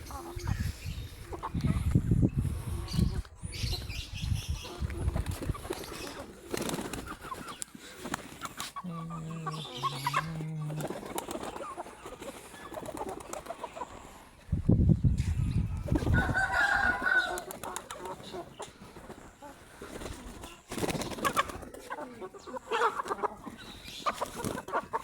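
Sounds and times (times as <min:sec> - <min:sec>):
wing flapping: 0:05.0 - 0:08.8, 0:10.6 - 0:13.7, 0:17.0 - 0:21.9.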